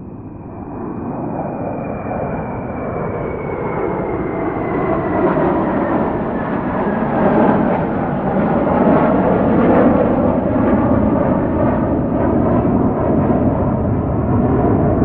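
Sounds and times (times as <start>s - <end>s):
airplane engine rush: 0.0s - 15.0s.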